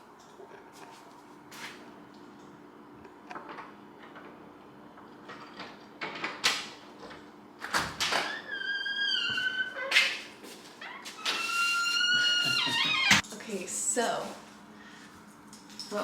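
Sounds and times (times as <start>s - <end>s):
door squeaking: 8.1s - 10.2s, 10.8s - 13.2s.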